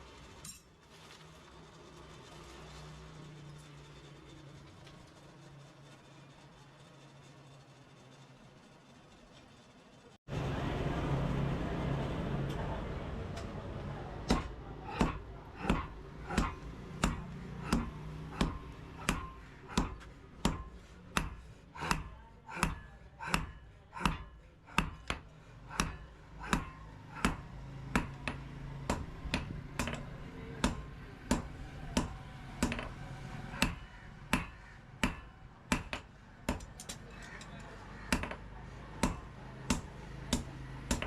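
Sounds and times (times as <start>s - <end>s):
hammer striking steel on anvil: 14.2s - 38.4s, 39.0s - 41.0s.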